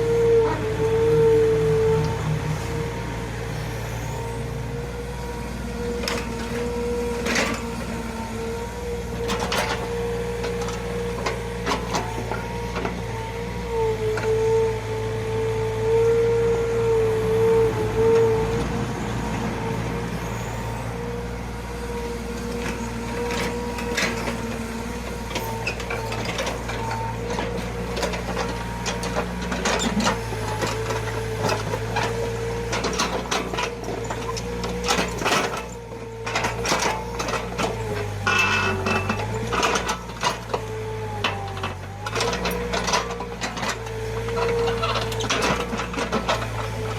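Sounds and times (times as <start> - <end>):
diesel engine running: 0.0 - 46.9
excavator knocks and clatters: 22.4 - 46.9.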